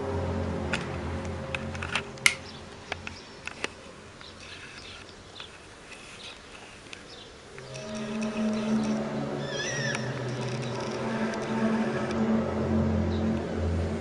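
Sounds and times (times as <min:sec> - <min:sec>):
low drone: 0:00.0 - 0:04.8, 0:07.4 - 0:14.0
sharp clicks: 0:07.6 - 0:09.0.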